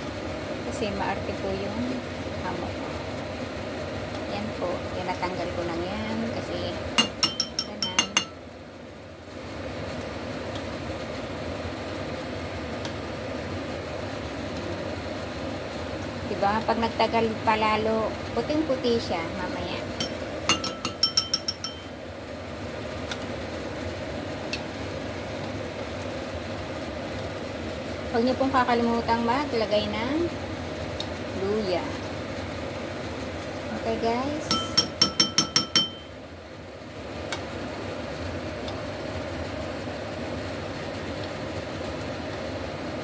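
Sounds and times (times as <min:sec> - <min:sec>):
soup boiling in a pot: 0:01.8 - 0:43.0
metal utensil clinking on pot: 0:07.0 - 0:08.4, 0:20.0 - 0:22.0, 0:34.5 - 0:36.2.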